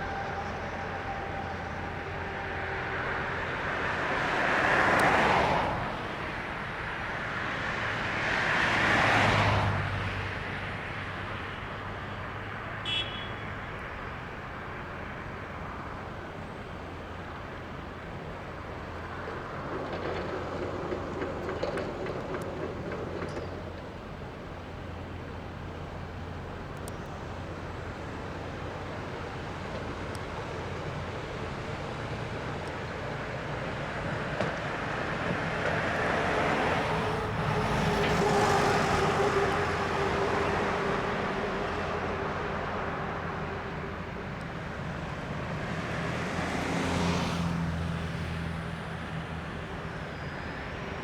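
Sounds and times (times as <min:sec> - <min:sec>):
vehicles passing whoosh: 0:00.0 - 0:13.0, 0:30.9 - 0:51.0
rough rumble with clicks: 0:18.6 - 0:27.2.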